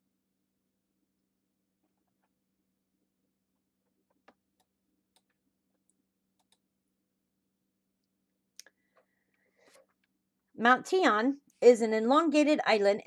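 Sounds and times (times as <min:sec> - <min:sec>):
computer mouse clicks: 0:06.4 - 0:06.7.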